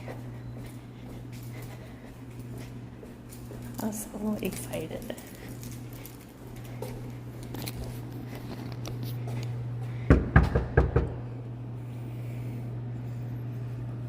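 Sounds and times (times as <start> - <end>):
steady low hum: 0.0 - 14.0
knocks on a door: 10.1 - 11.2.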